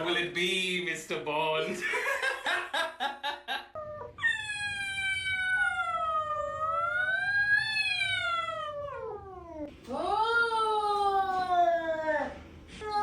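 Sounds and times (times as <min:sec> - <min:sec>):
cat yowling: 0:03.8 - 0:09.7.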